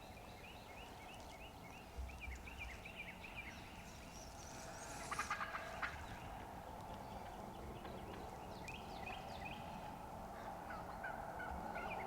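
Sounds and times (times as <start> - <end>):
turkey gobbling: 5.1 - 6.1.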